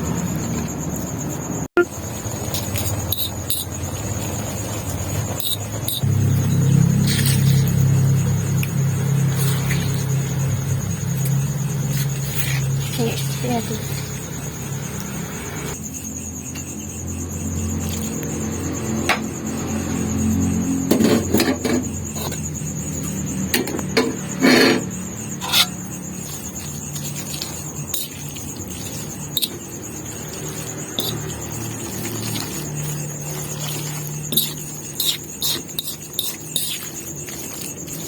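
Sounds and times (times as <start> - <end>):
utensils clinking against dishes: 20.9 - 38.0.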